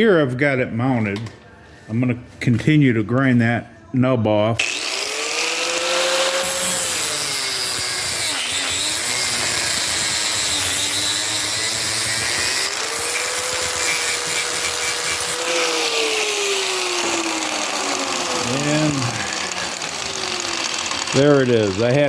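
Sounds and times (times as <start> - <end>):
power grinder grinding metal: 4.6 - 22.0.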